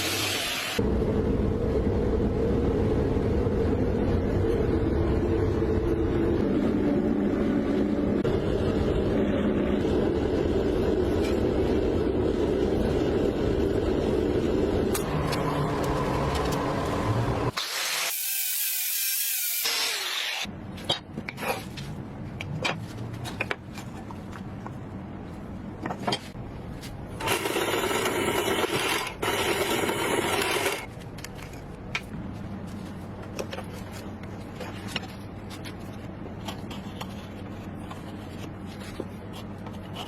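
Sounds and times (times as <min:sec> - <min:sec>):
low hum: 0:00.8 - 0:17.6
power tool running: 0:15.0 - 0:20.5, 0:27.2 - 0:30.9
taps and scrapes: 0:33.2 - 0:40.0.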